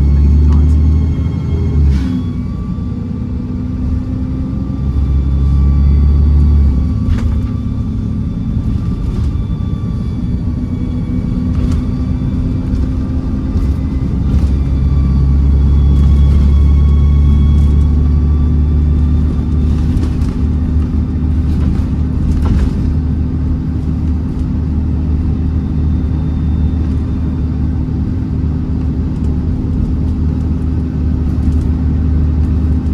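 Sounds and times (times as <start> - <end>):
bus diesel engine drone: 0.0 - 32.9
bus body rattles: 5.6 - 25.6.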